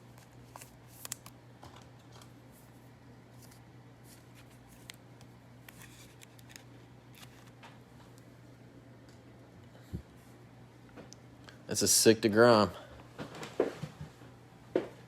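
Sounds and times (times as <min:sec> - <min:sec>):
cards and packaging rustling: 0:00.0 - 0:07.8
low electrical hum: 0:00.0 - 0:15.0.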